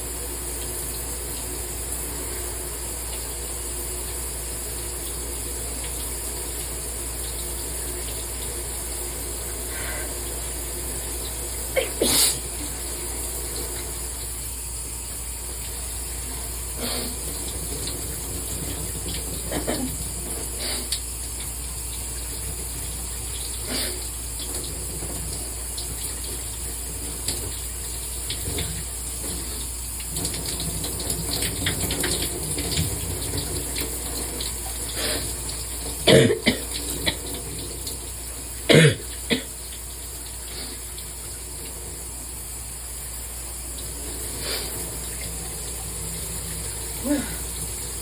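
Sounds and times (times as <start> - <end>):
shower running: 0.0 - 48.0
person sneezing: 11.7 - 12.6, 16.8 - 17.2, 23.7 - 24.0, 36.1 - 36.6, 38.7 - 39.5, 47.0 - 47.4.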